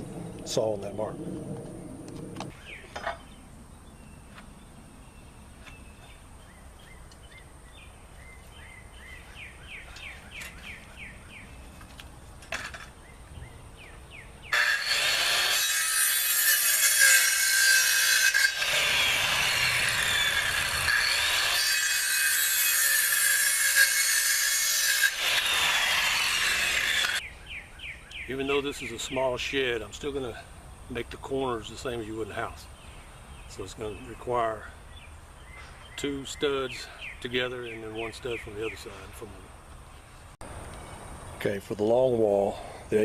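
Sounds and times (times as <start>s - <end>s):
power saw cutting wood: 14.5s - 27.2s.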